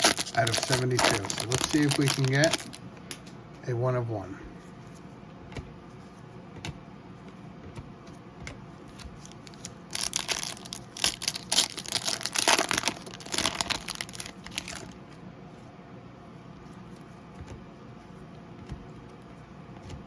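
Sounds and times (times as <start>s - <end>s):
plastic packaging tearing and crackling: 0.0s - 2.8s, 9.2s - 15.0s.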